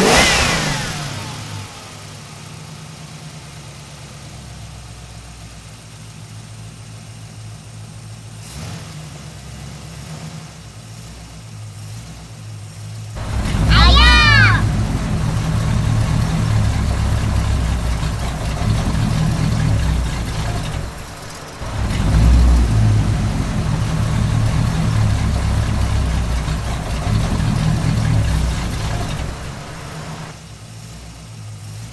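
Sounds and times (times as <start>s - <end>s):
low motor-like rumble: 13.2s - 30.4s.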